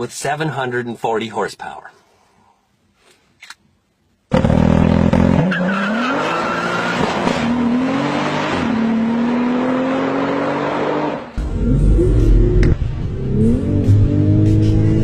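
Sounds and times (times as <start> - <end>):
car engine accelerating hard: 4.3 - 15.0.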